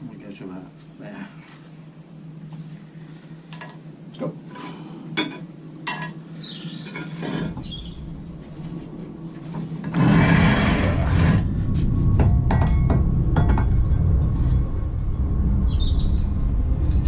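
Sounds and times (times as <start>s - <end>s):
power tool on iron: 9.8s - 11.5s.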